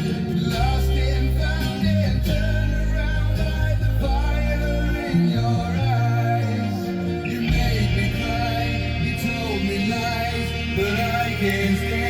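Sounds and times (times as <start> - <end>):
pop-rock song on car speakers: 0.0 - 12.0.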